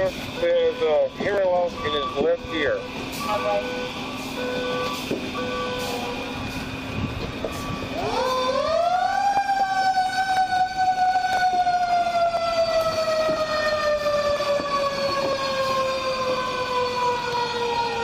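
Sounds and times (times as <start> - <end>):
vehicle reversing beeper: 0.0 - 8.6, 11.4 - 18.0
fire engine mechanical siren: 0.0 - 18.0.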